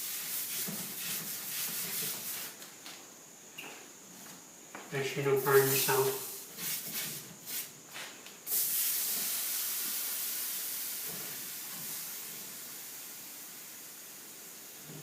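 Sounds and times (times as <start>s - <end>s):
steam hissing off hot metal: 0.0s - 2.6s, 5.4s - 7.7s, 8.5s - 15.0s.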